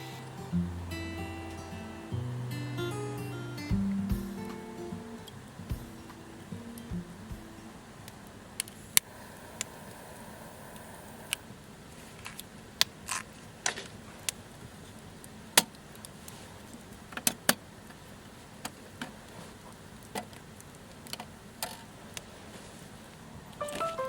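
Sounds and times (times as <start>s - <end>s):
faint steady background: 3.6s - 17.2s.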